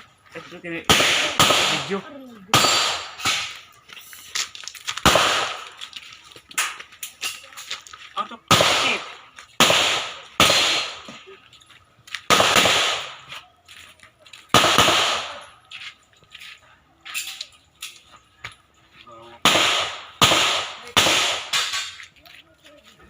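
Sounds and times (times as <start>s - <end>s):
pistol shots with echo: 0.8s - 3.6s, 5.0s - 5.8s, 8.5s - 11.2s, 12.3s - 13.3s, 14.5s - 15.5s, 19.4s - 22.0s.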